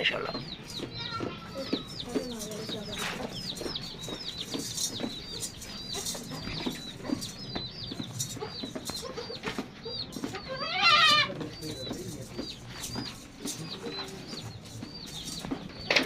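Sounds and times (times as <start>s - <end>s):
small birds chirping: 0.0s - 16.0s.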